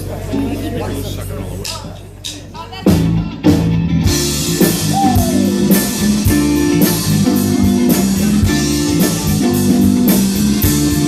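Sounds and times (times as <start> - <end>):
rock band playing: 2.9 - 11.0
bending electric guitar note: 4.8 - 6.5.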